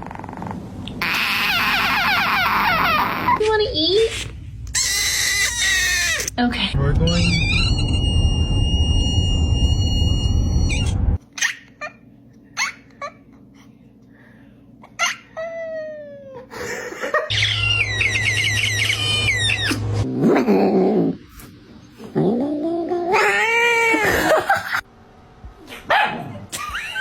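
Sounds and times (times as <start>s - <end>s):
low hum: 6.6s - 11.2s.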